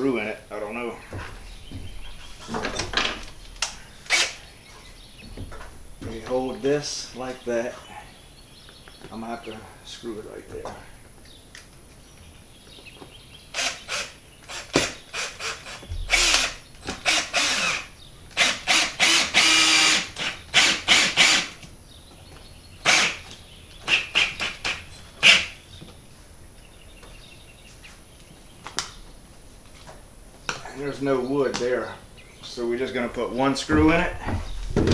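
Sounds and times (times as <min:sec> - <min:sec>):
power drill driving a screw: 0:04.0 - 0:04.4, 0:13.5 - 0:21.6, 0:22.8 - 0:25.6.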